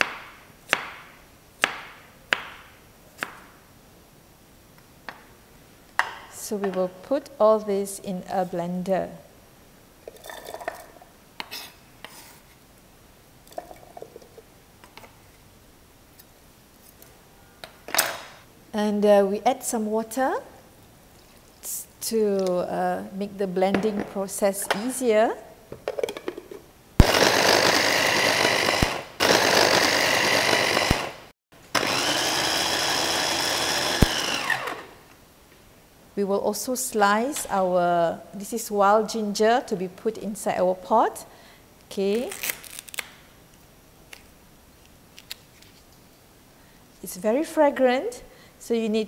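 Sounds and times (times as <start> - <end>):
blender running: 27.0 - 35.0.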